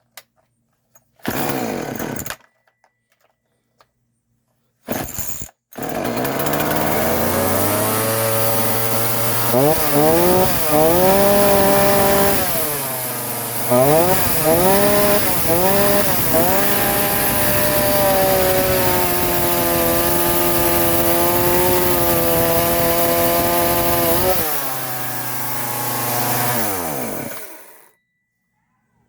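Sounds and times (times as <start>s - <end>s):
chainsaw revving: 1.2s - 2.3s, 5.8s - 27.9s.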